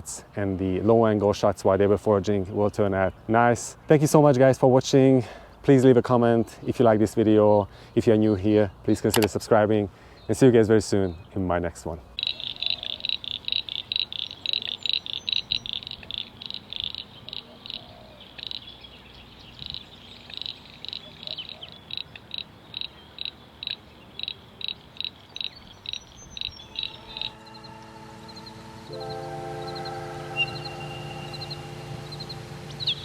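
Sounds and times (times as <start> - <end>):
rhythmic high-pitched chirping call: 12.2 - 18.8, 19.6 - 33.0.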